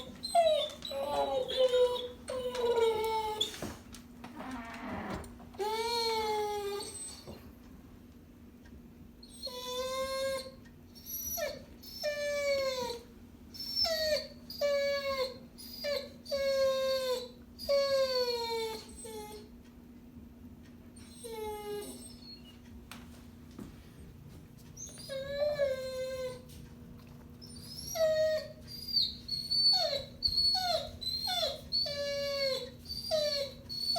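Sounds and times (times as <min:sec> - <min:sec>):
dog whining and howling: 0:00.0 - 0:03.7, 0:05.6 - 0:07.4, 0:09.2 - 0:19.5, 0:21.0 - 0:22.5, 0:24.8 - 0:26.6, 0:27.4 - 0:33.9.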